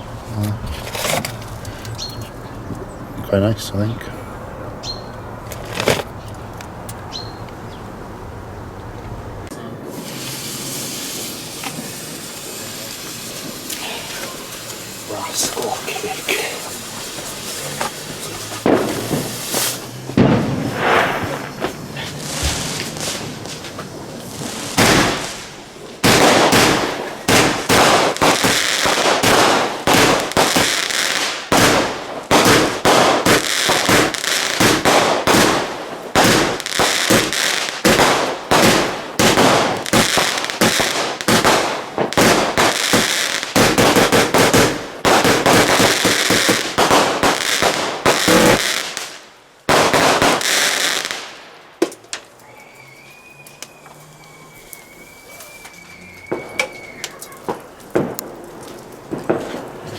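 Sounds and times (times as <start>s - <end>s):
fireworks shots and crackling: 9.7s - 52.4s, 56.3s - 59.9s
faint bird call: 52.4s - 57.4s.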